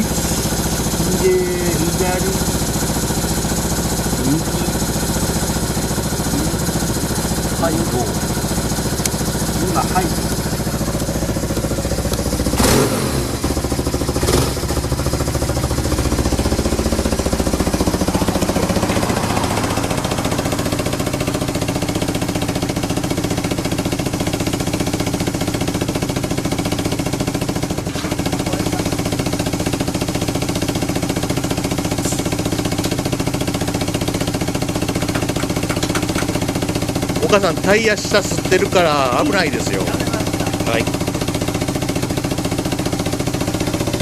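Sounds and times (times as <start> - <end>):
engine revving burst: 0.0 - 23.0
motorcycle engine idling: 0.0 - 44.0.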